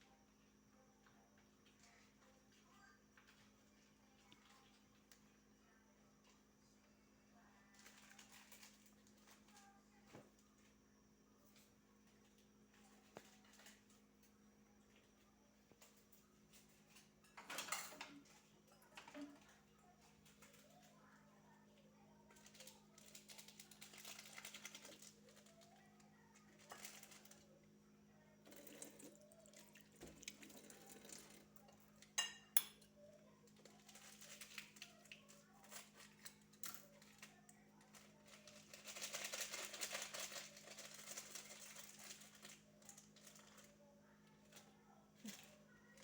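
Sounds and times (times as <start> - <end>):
dishes and utensils clinking: 17.2 - 19.4, 30.0 - 33.0.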